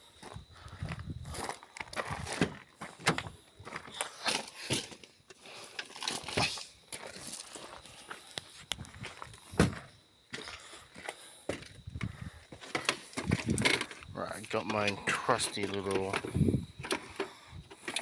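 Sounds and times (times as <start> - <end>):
knocks clicks and rustles: 11.5 - 18.0.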